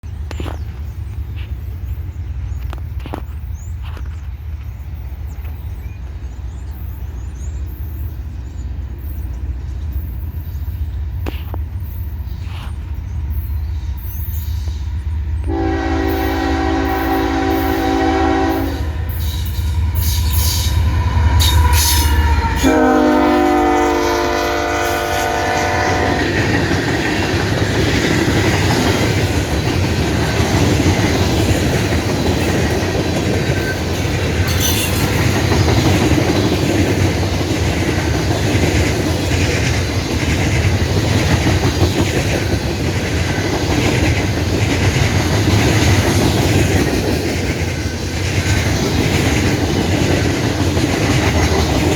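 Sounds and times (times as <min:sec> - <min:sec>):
diesel locomotive rumble: 0:00.0 - 0:51.9
train air horn chord: 0:15.4 - 0:19.2, 0:21.4 - 0:26.4
wheels clacking over rail joints: 0:25.9 - 0:51.9.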